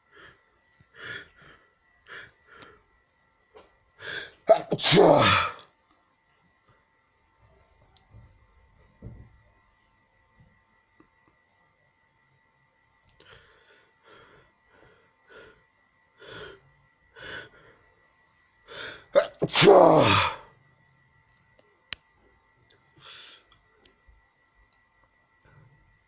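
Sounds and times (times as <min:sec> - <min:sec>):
person sneezing loudly: 0:04.4 - 0:05.7, 0:19.1 - 0:20.5.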